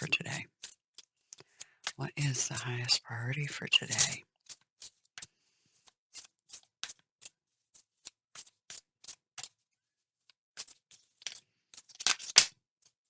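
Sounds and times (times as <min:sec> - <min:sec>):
cards being shuffled: 0:12.0 - 0:12.5.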